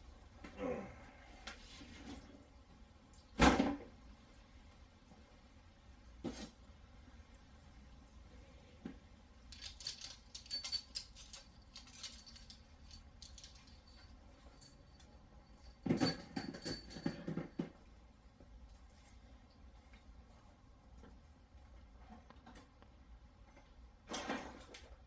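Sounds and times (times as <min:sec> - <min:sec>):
metal parts clinking: 0:09.5 - 0:17.2.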